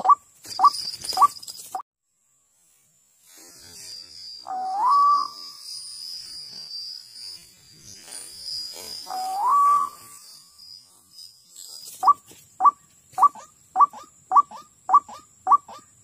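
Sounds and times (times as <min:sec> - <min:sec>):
high-pitched buzz: 0:02.2 - 0:15.0
bird calling rising notes: 0:03.7 - 0:10.8.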